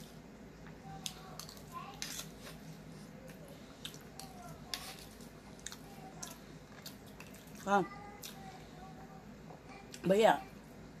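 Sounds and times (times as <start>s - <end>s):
wet chewing: 1.0s - 8.5s.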